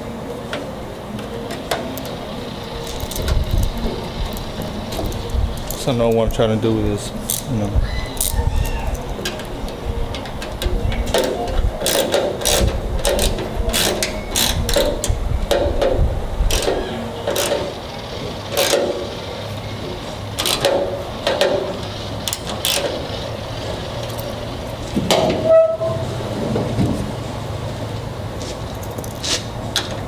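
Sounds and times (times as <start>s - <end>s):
tailgate metal knocks and clanks: 24.9s - 27.2s
horn-like tone: 25.4s - 26.2s.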